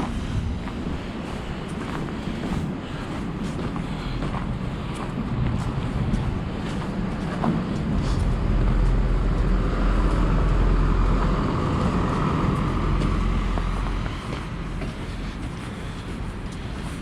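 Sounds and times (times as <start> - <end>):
steady low rumble: 0.0 - 17.0
vehicle driving past: 5.2 - 15.6.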